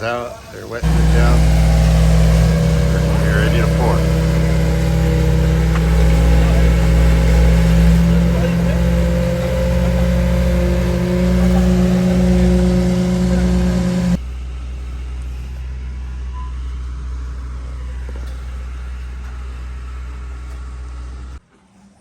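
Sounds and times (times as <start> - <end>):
diesel truck engine running: 0.0 - 21.4
low engine rumble: 0.0 - 21.4.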